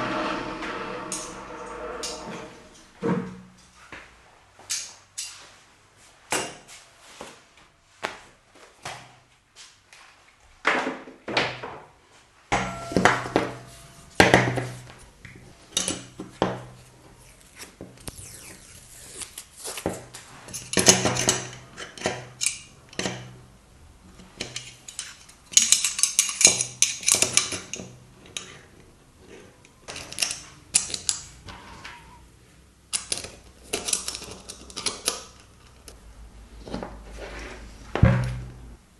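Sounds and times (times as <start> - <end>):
metal tool parts clinking: 24.4 - 27.7.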